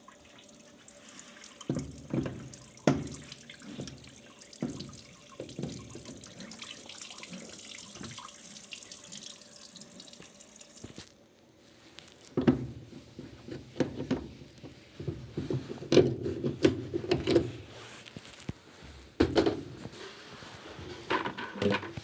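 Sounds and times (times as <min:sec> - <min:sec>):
water running: 0:00.0 - 0:11.1.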